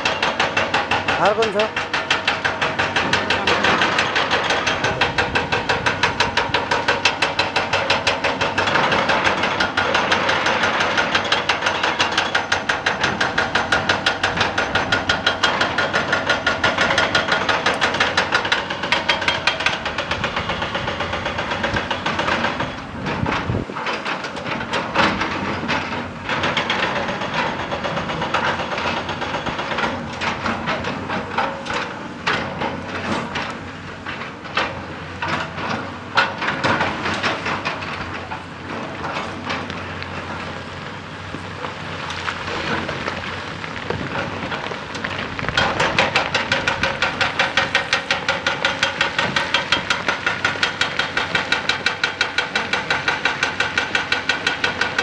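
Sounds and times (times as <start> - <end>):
excavator knocking and clatter: 0.0 - 55.0
hydraulic rock breaker hammering: 0.0 - 55.0.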